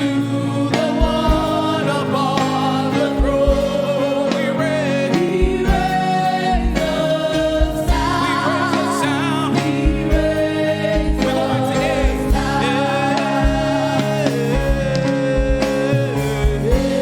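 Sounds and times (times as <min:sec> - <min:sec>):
singers holding long notes: 0:00.0 - 0:17.0
steady bass drum beat: 0:00.0 - 0:17.0
sustained keyboard chords: 0:00.0 - 0:17.0.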